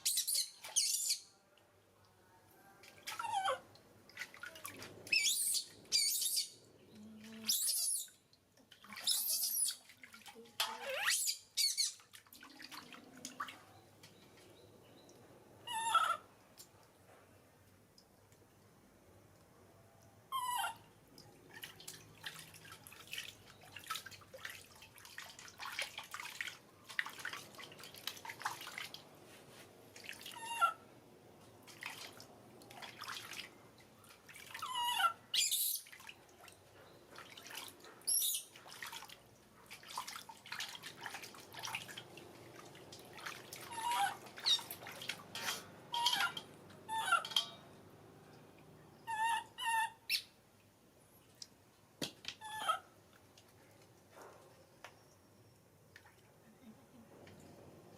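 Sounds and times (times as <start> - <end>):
baby monkey squeaking: 0.0 - 1.2, 5.1 - 6.5, 7.5 - 8.1, 9.0 - 9.8, 10.8 - 12.0, 15.7 - 16.2, 34.6 - 35.8, 38.1 - 38.5, 43.7 - 44.7, 45.9 - 47.4, 49.1 - 50.2
soft wet clicks: 16.4 - 17.0, 17.6 - 20.2, 51.3 - 52.4, 53.1 - 56.4.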